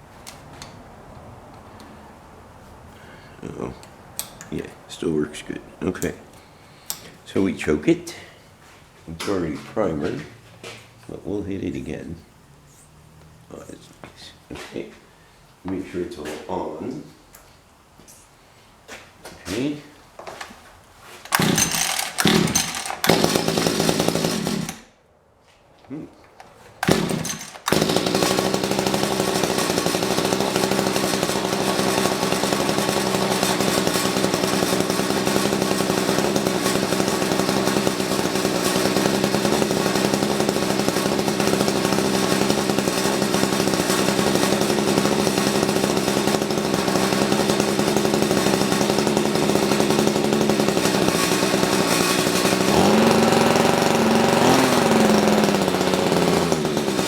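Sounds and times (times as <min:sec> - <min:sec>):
man talking: 0:03.4 - 0:03.8, 0:04.5 - 0:06.3, 0:07.2 - 0:08.4, 0:09.1 - 0:10.4, 0:11.1 - 0:12.3, 0:13.5 - 0:15.0, 0:15.6 - 0:17.2, 0:19.4 - 0:20.0, 0:25.9 - 0:26.2
small engine running: 0:21.3 - 0:24.9, 0:26.8 - 0:57.0.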